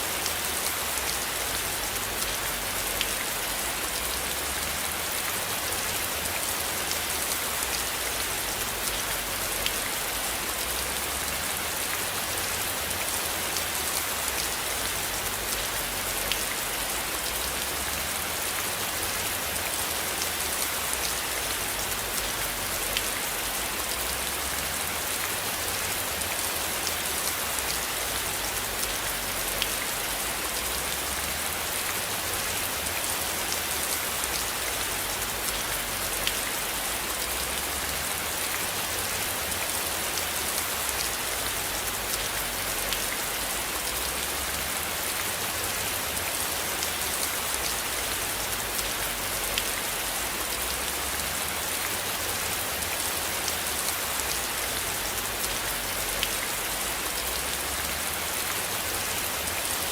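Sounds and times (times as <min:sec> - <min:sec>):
steady rain hissing: 0:00.0 - 0:59.9.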